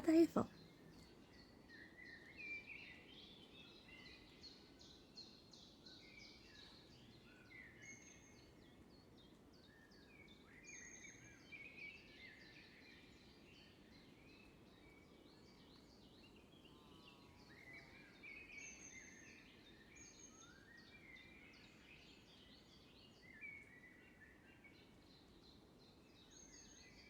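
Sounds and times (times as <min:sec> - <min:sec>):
small birds chirping: 0:00.0 - 0:27.0.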